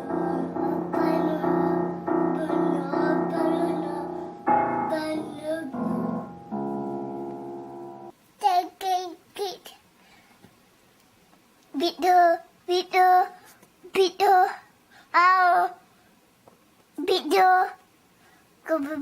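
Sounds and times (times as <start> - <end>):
electronic keyboard music: 0.0 - 8.1
sung melodic line: 0.0 - 8.1.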